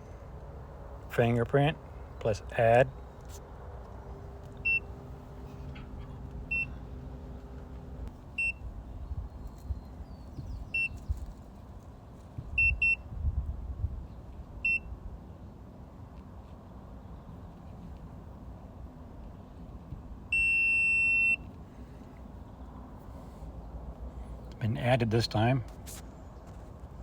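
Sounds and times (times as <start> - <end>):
door lock short high beeps: 6.5 - 6.8.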